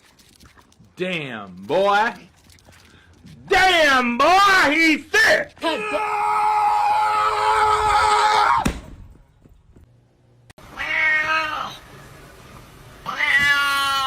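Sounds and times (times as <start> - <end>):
cat meowing: 10.7 - 11.8, 13.0 - 14.0.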